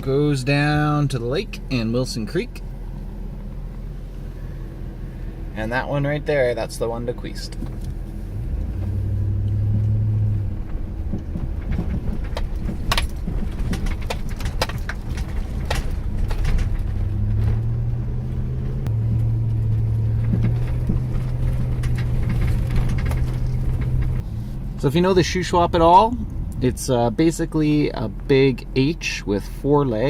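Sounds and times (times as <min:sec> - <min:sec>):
road noise: 0:00.0 - 0:30.0
truck engine drone: 0:00.0 - 0:30.0
clicks and rattles: 0:10.6 - 0:17.8, 0:19.1 - 0:24.2.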